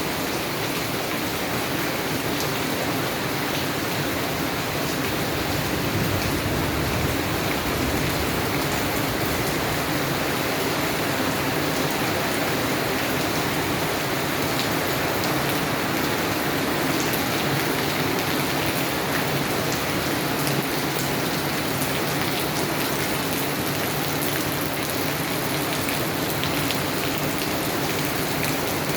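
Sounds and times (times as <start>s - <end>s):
steady rain falling: 0.0s - 28.9s.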